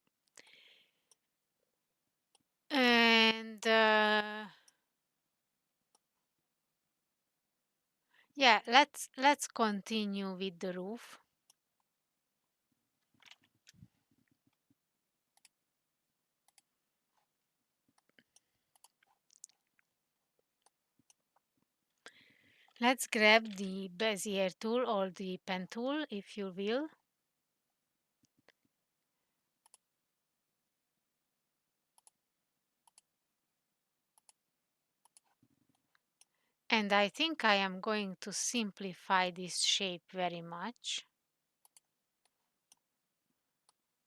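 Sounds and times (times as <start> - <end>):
faint clicks and ticks: 13.0 - 15.6, 16.4 - 22.8, 29.6 - 29.9, 31.9 - 32.2, 32.8 - 33.2, 34.1 - 36.4, 41.6 - 42.9, 43.6 - 43.9.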